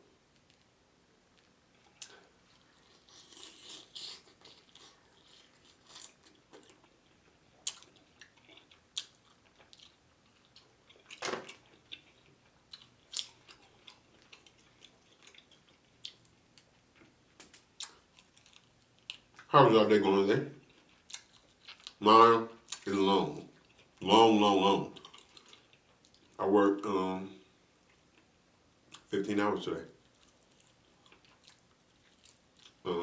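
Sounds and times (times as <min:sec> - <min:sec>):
chewing fried chicken: 0:01.3 - 0:19.5, 0:20.5 - 0:24.0, 0:24.8 - 0:26.4, 0:30.0 - 0:33.0
crunching food: 0:01.3 - 0:19.5, 0:20.6 - 0:24.0, 0:24.9 - 0:26.4, 0:30.0 - 0:33.0.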